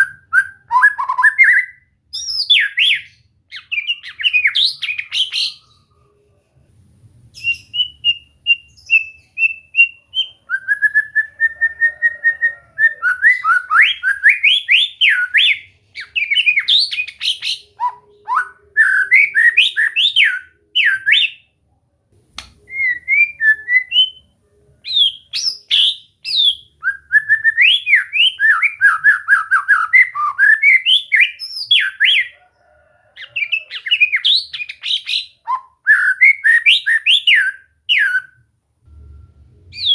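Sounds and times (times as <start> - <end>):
bird singing whistled phrases: 7.4 - 21.4, 22.6 - 32.3, 33.5 - 38.4.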